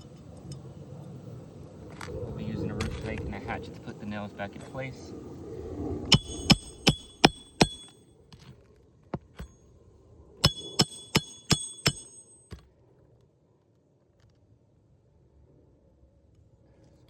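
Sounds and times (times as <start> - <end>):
hatchet striking nails: 6.1 - 7.9, 10.4 - 12.6.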